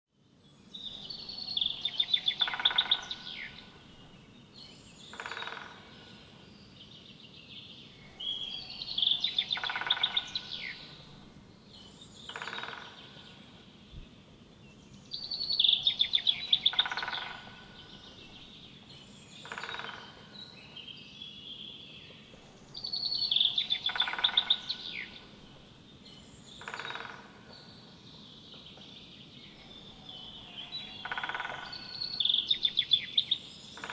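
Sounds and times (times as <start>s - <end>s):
woodpecker calling: 0.8s - 4.4s, 5.0s - 6.2s, 8.1s - 11.3s, 12.1s - 13.6s, 15.2s - 20.7s, 22.4s - 27.7s, 29.5s - 33.9s.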